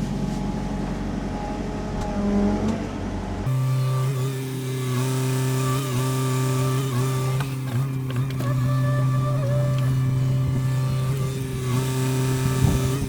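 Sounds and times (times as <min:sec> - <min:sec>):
diesel excavator engine droning: 0:00.0 - 0:13.0.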